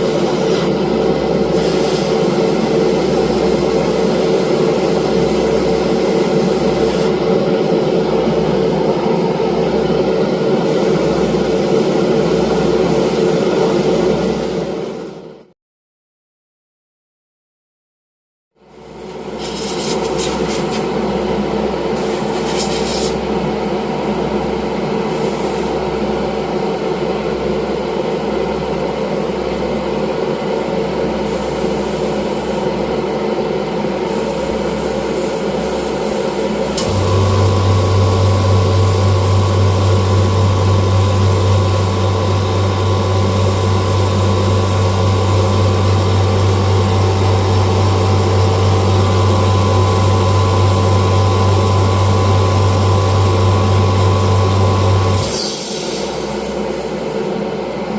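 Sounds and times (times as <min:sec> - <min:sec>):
workshop machinery hissing: 0:00.0 - 0:08.2, 0:09.9 - 0:15.3, 0:18.6 - 0:21.1, 0:21.8 - 0:23.5, 0:24.9 - 0:26.3, 0:31.2 - 0:33.0, 0:33.8 - 0:57.9
deep motor hum: 0:36.8 - 0:55.2.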